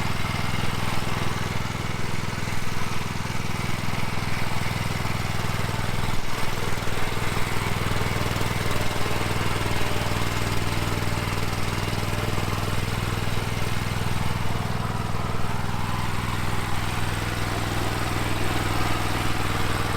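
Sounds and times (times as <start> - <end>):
wood chipper engine running: 0.0 - 19.9.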